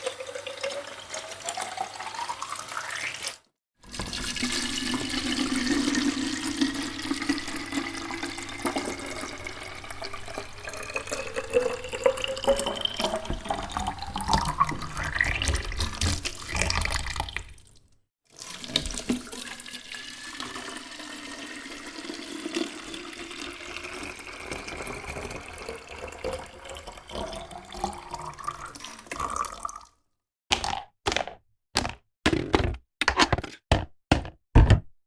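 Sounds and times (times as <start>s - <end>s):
water streaming into bottle: 0.0s - 29.9s.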